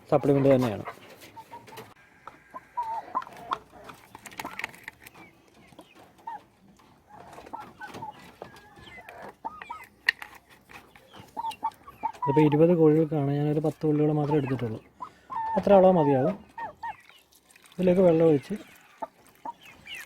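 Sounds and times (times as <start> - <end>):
chickens clucking: 0.0 - 20.0.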